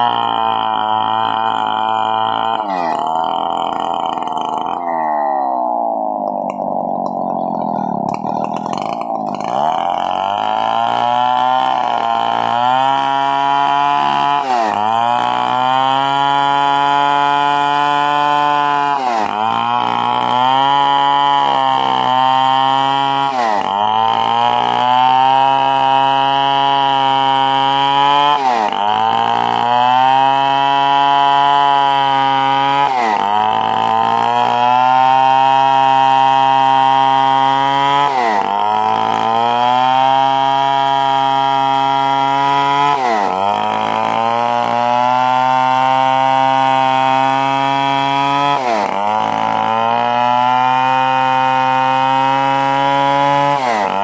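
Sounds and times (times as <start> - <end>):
chainsaw running at high revs: 0.0 - 54.0.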